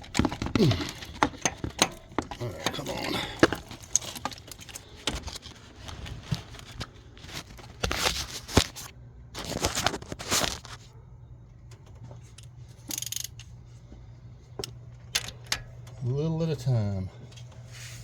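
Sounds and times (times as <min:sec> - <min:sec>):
metal clicks of tools: 0:12.3 - 0:13.6
ratchet wrench clicking: 0:12.8 - 0:13.5.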